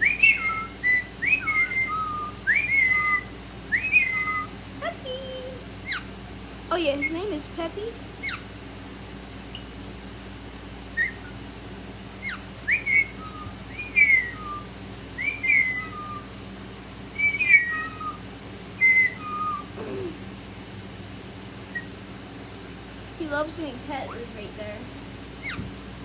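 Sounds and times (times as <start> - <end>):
parrot whistling: 0.0 - 4.6, 5.4 - 6.1, 8.2 - 8.5, 11.0 - 11.4, 12.2 - 16.4, 17.1 - 18.2, 18.8 - 19.8, 21.7 - 22.0, 25.4 - 25.7.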